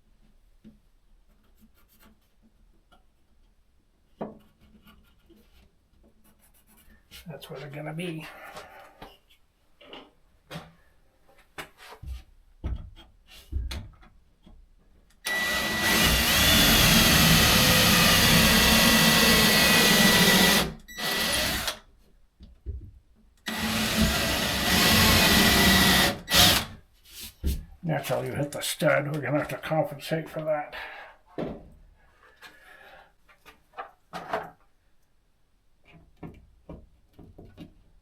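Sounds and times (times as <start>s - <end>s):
power drill whining: 15.2s - 21.8s, 23.5s - 26.7s.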